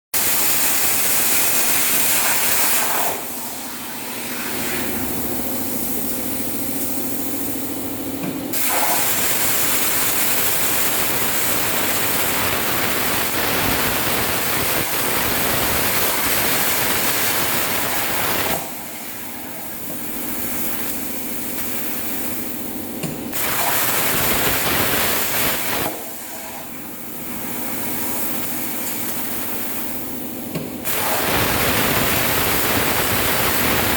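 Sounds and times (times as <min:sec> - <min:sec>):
plasma torch hissing: 0:00.2 - 0:05.0, 0:08.5 - 0:22.5, 0:23.4 - 0:26.9, 0:30.9 - 0:33.9.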